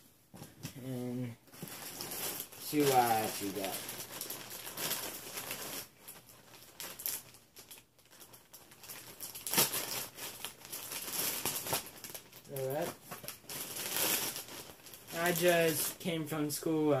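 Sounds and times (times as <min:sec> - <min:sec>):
wrapping crinkling and rustling: 0:00.4 - 0:16.8
package being torn open: 0:02.6 - 0:15.5.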